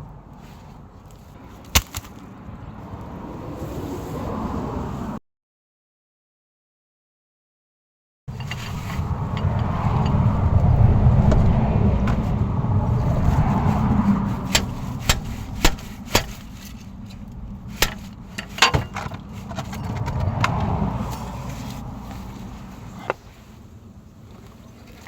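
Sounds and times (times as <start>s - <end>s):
vehicles passing on road: 0.0s - 5.2s, 8.3s - 25.0s
sharp clicks and knocks: 14.4s - 20.8s.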